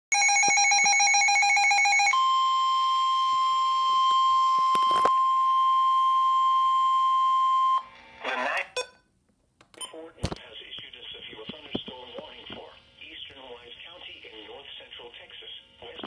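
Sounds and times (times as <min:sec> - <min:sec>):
pulsing electronic alarm tone: 0:00.1 - 0:07.8.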